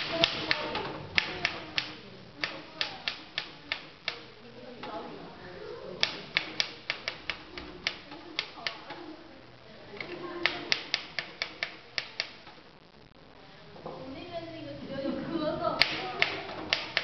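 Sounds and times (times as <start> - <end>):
typewriter keys striking: 6.0 - 8.9, 15.8 - 17.0.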